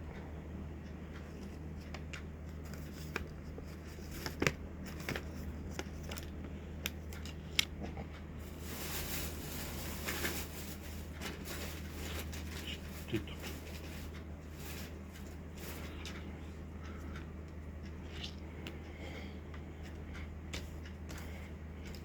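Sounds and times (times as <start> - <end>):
packaging crinkling: 8.5 - 14.0.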